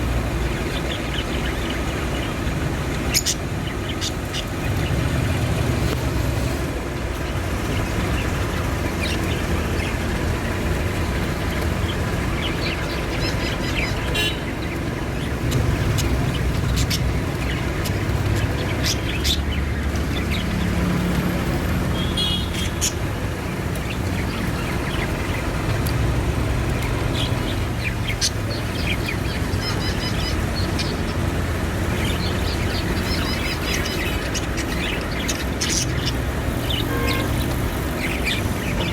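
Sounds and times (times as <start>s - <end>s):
baby budgerigars chirping: 0.0s - 6.0s, 7.2s - 38.9s
steady low rumble: 14.7s - 19.2s.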